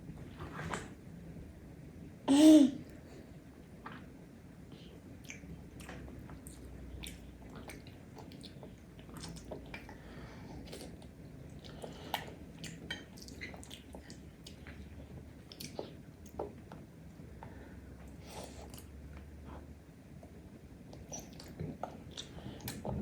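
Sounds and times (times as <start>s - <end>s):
chewing and wet mouth sounds: 4.8s - 10.0s, 10.6s - 16.8s, 20.2s - 23.0s.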